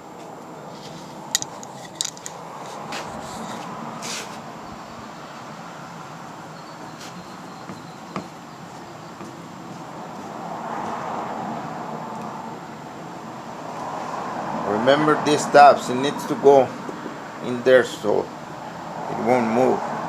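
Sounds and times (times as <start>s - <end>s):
steady background hum: 0.0s - 20.0s
metal parts clicking and tapping: 1.3s - 2.4s.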